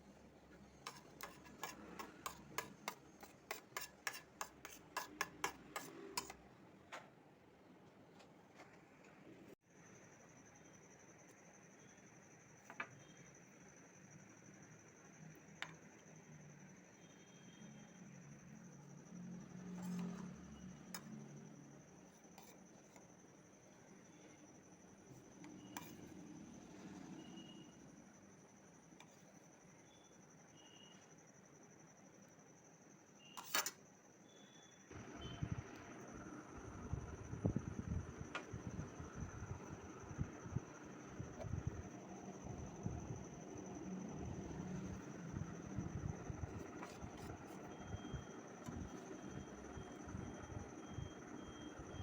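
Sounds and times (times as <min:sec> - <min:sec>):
faint high whine: 0:07.6 - 0:52.0.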